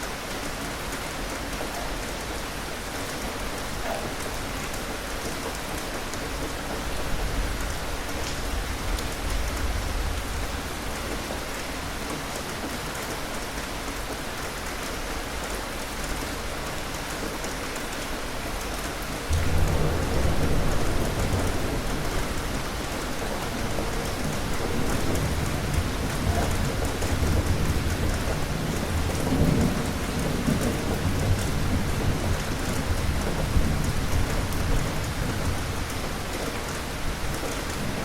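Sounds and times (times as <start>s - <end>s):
rain falling: 0.0s - 38.0s
low rumble: 19.3s - 22.7s.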